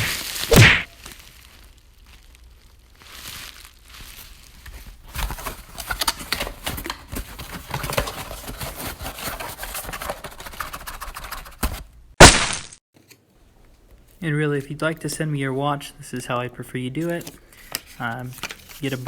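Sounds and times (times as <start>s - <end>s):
packaging rustling and crinkling: 0.0s - 10.7s, 17.0s - 19.0s.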